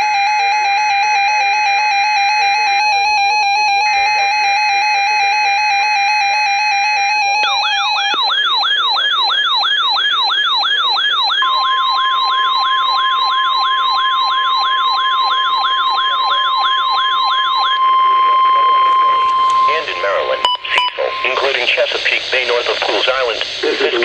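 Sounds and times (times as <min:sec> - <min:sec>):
rapid sweeping siren: 0:00.0 - 0:22.4
steady warning alarm tone: 0:00.0 - 0:24.0
stepped electronic beeping: 0:07.4 - 0:23.1
data tones burst: 0:07.4 - 0:24.0.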